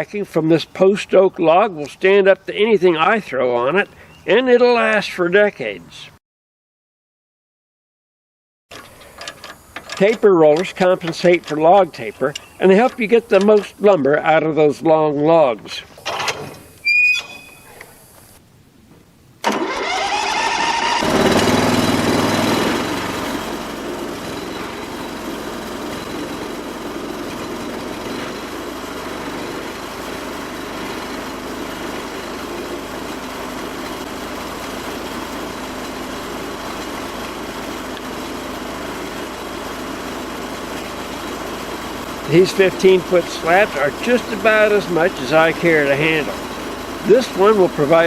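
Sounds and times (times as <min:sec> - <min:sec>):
sawmill engine revving: 0:10.0 - 0:15.8, 0:19.4 - 0:48.0.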